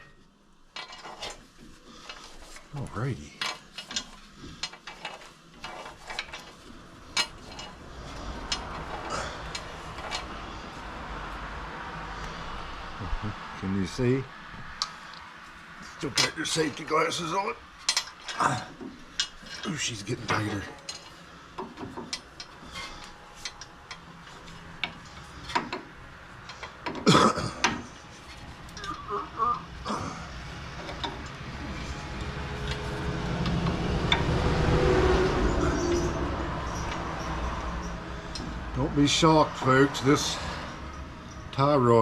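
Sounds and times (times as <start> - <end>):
steady low rumble: 6.7 - 15.0.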